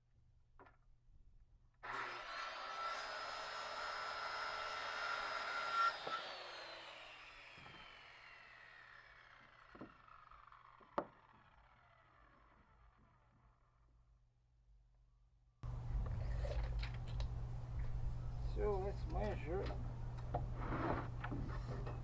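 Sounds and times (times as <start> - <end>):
circular saw cutting wood: 1.8 - 13.6
saw blade spinning down: 1.8 - 13.7.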